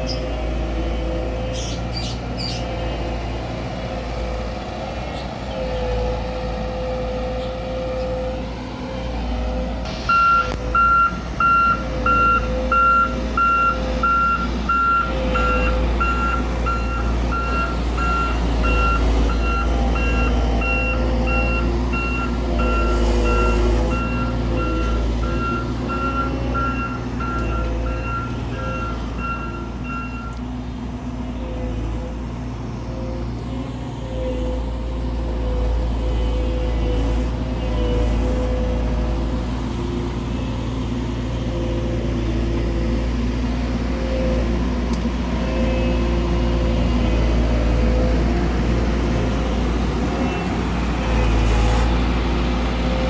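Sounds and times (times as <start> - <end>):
diesel machinery engine running: 0.0 - 53.0
reversing alarm beeping: 10.0 - 30.4.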